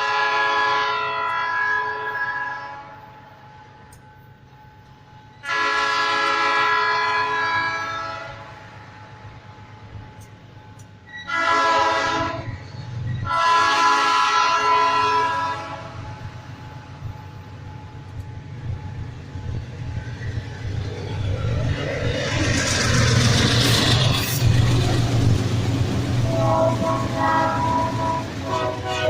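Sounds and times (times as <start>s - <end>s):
train horn blasts: 0.0s - 3.3s, 5.4s - 9.1s, 11.2s - 16.2s, 26.1s - 29.0s
locomotive rumble: 3.4s - 29.0s
train rushing past: 5.3s - 29.0s.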